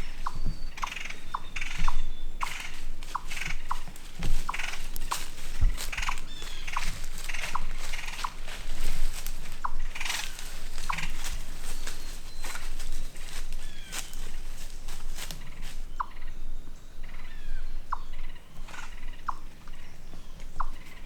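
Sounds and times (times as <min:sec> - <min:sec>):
animal calls with buzzy trills: 0:00.2 - 0:08.4.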